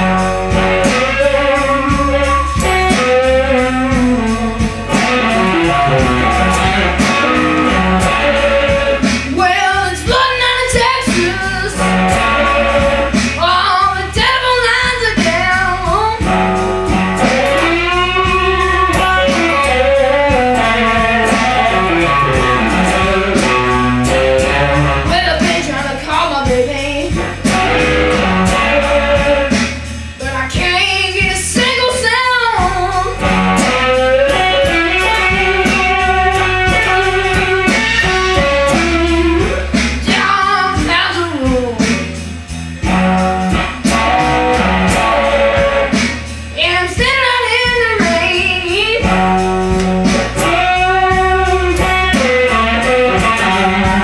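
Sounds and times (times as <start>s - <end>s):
electric guitar blues lead: 0.0s - 54.0s
low bass line: 0.0s - 54.0s.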